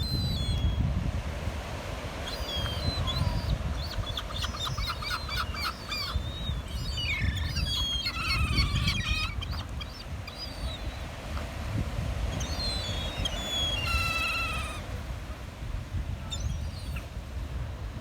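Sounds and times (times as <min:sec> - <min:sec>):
surf washing: 0:00.0 - 0:18.0
gulls calling: 0:02.2 - 0:11.2, 0:12.3 - 0:15.0.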